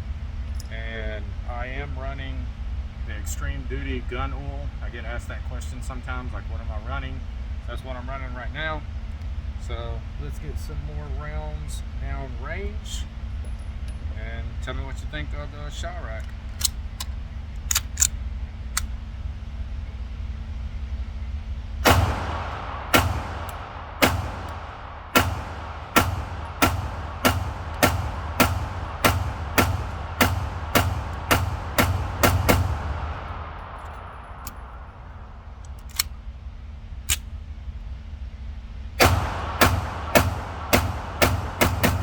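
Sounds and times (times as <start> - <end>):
low rumble: 0.0 - 42.0
gunshots: 21.8 - 34.5, 39.0 - 42.0
pistol shots with echo: 21.8 - 34.5, 39.0 - 42.0.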